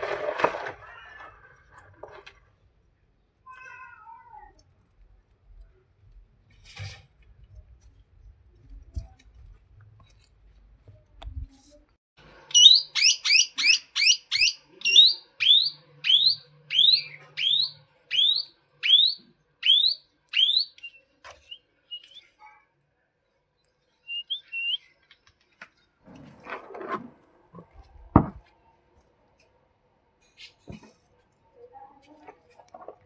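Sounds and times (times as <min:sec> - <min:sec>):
parakeet shrill whistles: 0:12.5 - 0:21.0
soft bird chirps: 0:12.5 - 0:22.6, 0:23.6 - 0:25.1.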